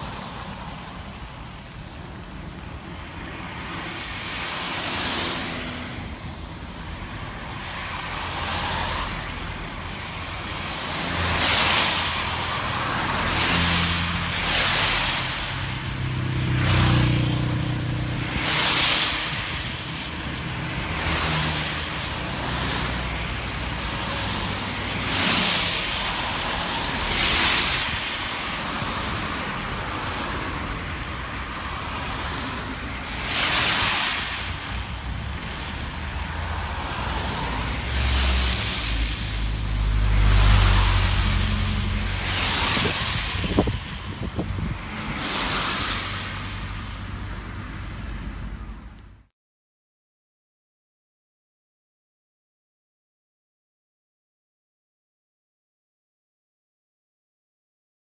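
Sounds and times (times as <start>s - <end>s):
cars passing: 0.0s - 49.3s
heavy vehicle rumble: 5.4s - 49.3s.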